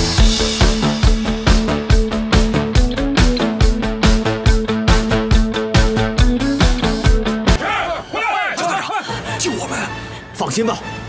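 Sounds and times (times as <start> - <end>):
music with driving beat and guitar: 0.0 - 7.6.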